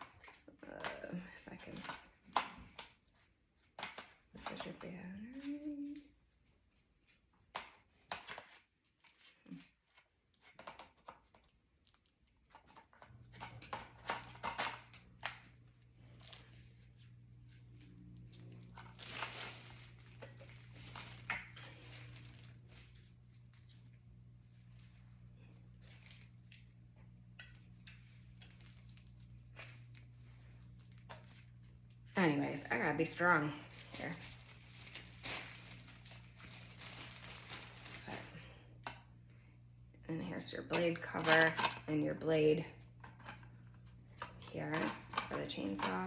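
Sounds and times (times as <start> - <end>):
plastic parts clicking and knocking: 10.3 - 11.6
packaging crinkling: 17.7 - 24.0, 25.7 - 26.7, 27.5 - 32.0, 32.8 - 38.6.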